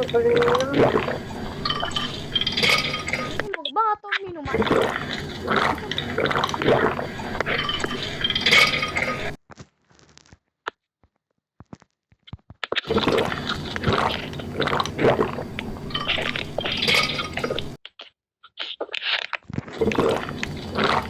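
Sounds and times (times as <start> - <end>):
person drinking water: 0.0 - 3.5, 4.5 - 9.4, 12.9 - 17.8, 19.8 - 21.0.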